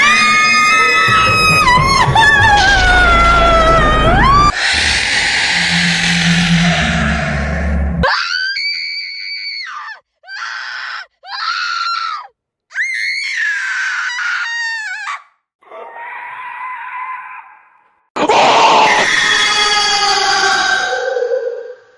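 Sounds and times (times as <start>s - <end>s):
high-pitched screams: 0.0s - 15.2s, 18.2s - 21.9s.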